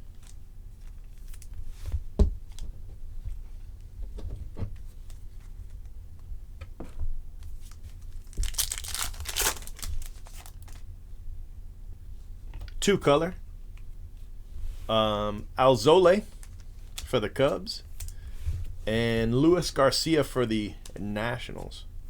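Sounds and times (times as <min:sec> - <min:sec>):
wrapper tearing and crinkling: 0:08.0 - 0:10.8, 0:16.3 - 0:16.6.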